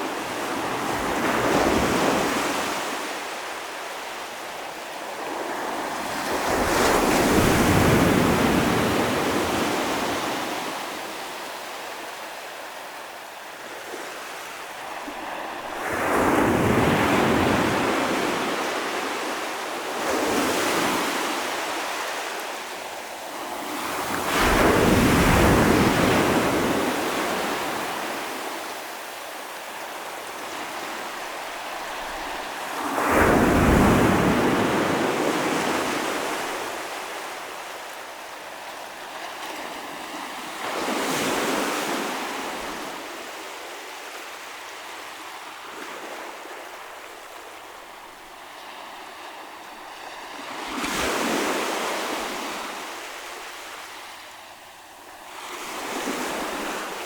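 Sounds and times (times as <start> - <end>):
ocean waves crashing: 23.6 - 37.1.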